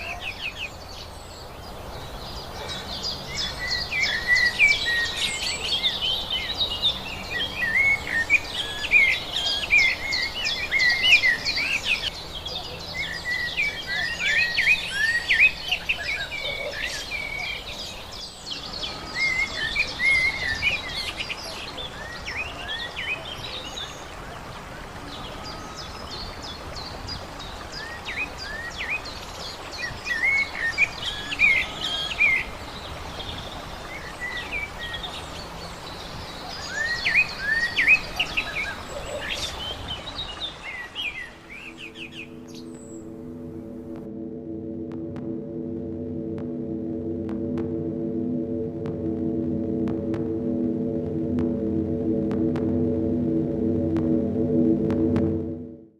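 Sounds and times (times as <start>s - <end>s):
songbirds chirping and singing: 0.0s - 24.2s
steady background hiss: 0.0s - 55.5s.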